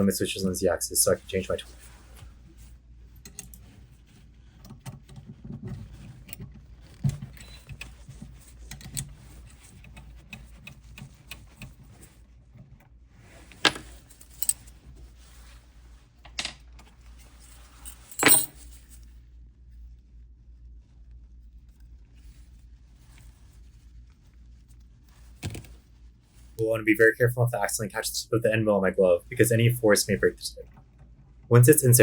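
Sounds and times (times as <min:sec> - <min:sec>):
metal tools clinking: 0:14.2 - 0:14.6, 0:17.7 - 0:18.7.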